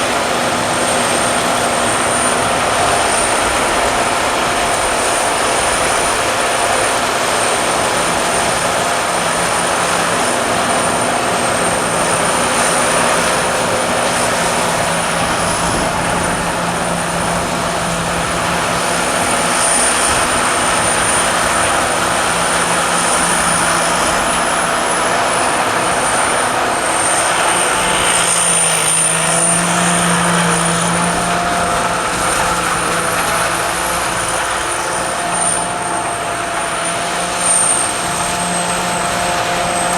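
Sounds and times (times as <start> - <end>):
combine harvester droning: 0.0 - 39.9
thin high whine: 0.0 - 39.9.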